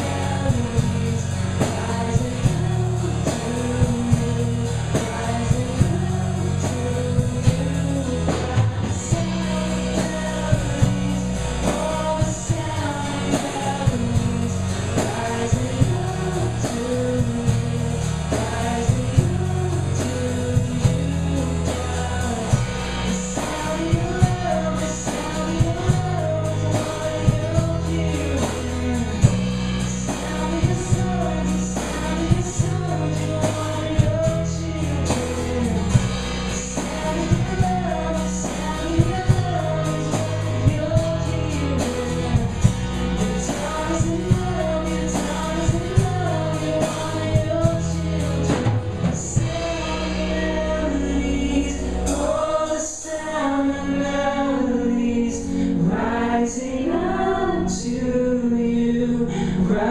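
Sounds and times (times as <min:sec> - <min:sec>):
bass: 0:00.0 - 0:59.9
drums: 0:00.0 - 0:59.9
guitar: 0:00.0 - 0:59.9
person singing: 0:00.0 - 0:59.9.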